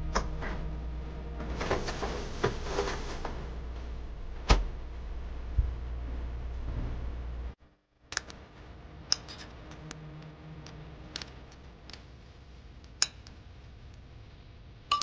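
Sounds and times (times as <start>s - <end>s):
faint low hum: 0.0s - 7.6s.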